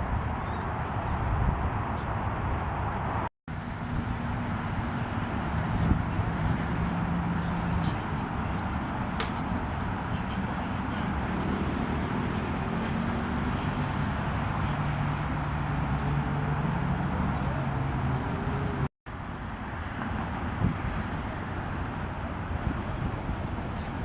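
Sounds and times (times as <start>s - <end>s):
low engine hum: 0.0s - 24.0s
road traffic rumble: 0.0s - 24.0s.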